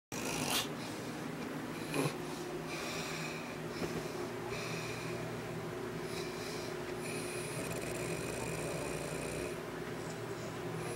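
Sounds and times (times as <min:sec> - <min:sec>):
loud snort: 0:00.2 - 0:00.7, 0:01.9 - 0:02.2, 0:07.1 - 0:09.6
hissy breathing: 0:00.5 - 0:05.4, 0:06.0 - 0:09.5
person snoring: 0:01.8 - 0:02.2, 0:07.1 - 0:09.6.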